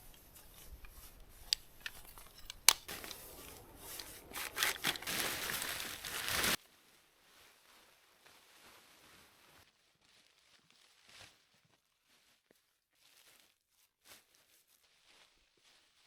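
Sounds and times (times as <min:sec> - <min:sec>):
tent fabric rustling: 0:00.0 - 0:16.0.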